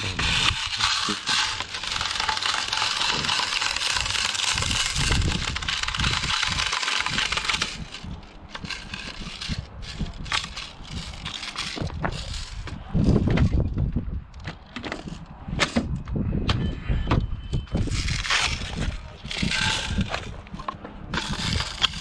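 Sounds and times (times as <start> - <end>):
plastic pellets rattling: 0.0 - 12.6, 17.9 - 22.0.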